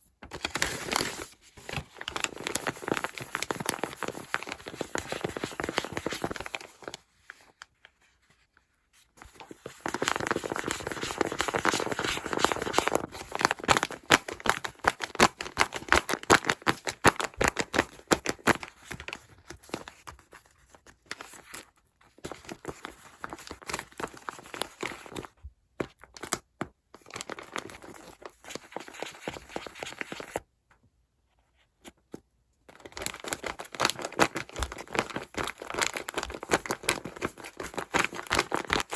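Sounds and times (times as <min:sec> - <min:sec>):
paper crinkling and tearing: 0:00.2 - 0:07.6, 0:09.2 - 0:19.9.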